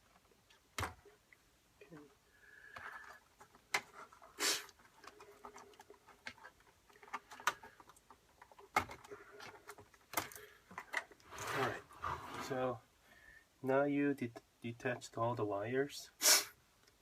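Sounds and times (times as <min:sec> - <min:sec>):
faint steady hum: 0:00.0 - 0:17.0
clicks and taps of connectors: 0:05.0 - 0:11.2.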